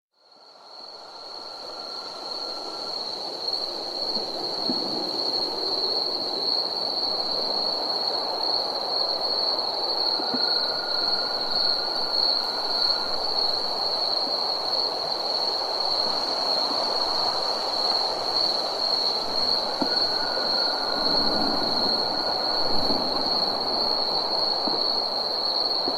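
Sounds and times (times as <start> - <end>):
crickets trilling: 0.2 - 25.9.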